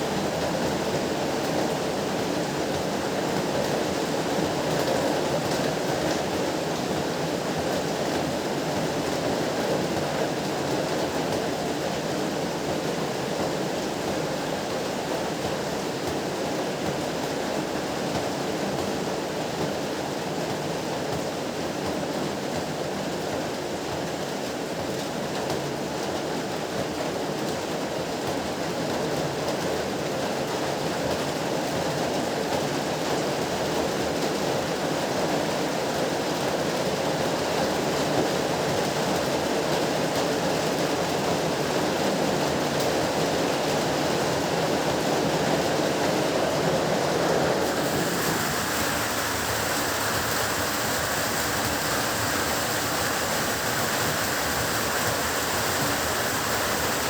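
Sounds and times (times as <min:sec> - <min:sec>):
heavy rain hissing: 0:44.8 - 0:57.0.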